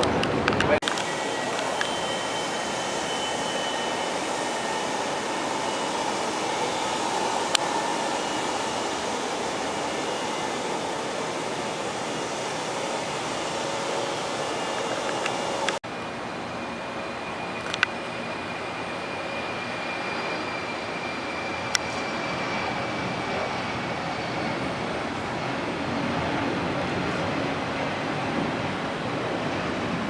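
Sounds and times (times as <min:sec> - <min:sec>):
jet engine whooshing and whining: 0:00.0 - 0:30.0
click: 0:17.7 - 0:17.9.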